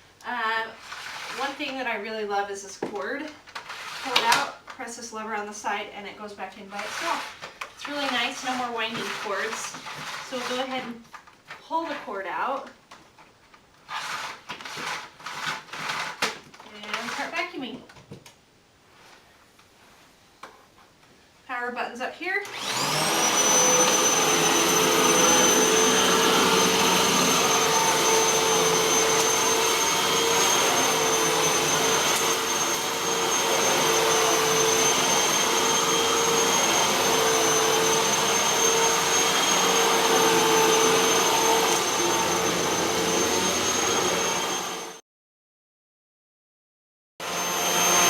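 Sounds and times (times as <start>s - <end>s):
vacuum cleaner running: 0.8s - 2.3s, 3.7s - 4.5s, 6.7s - 10.9s, 22.4s - 45.0s, 47.2s - 48.0s.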